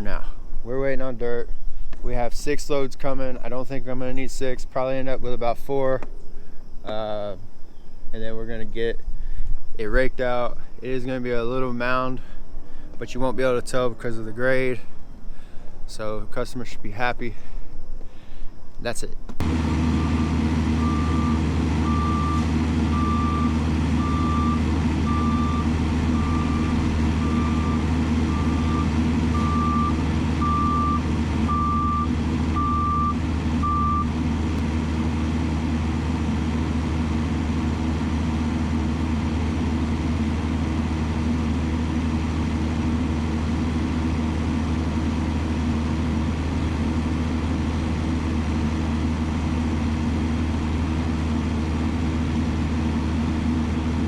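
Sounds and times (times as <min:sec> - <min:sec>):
diesel engine running: 0:00.0 - 0:16.4, 0:19.4 - 0:54.0
reversing alarm beeping: 0:19.9 - 0:34.2.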